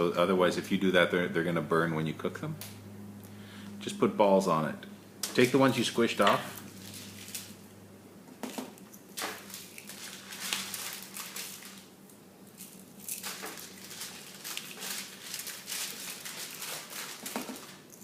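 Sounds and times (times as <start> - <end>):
paper rustling and crinkling: 6.6 - 7.6, 8.4 - 11.9, 12.6 - 18.0.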